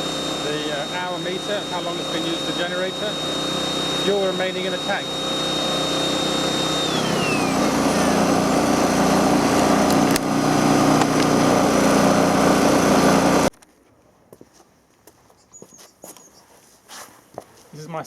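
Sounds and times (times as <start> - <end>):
thin high whine: 0.0 - 9.2
generator engine running: 0.0 - 13.5.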